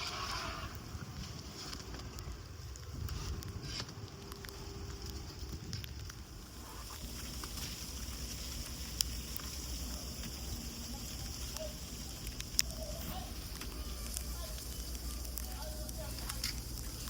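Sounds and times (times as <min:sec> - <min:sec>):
wind on microphone: 0:00.0 - 0:06.9.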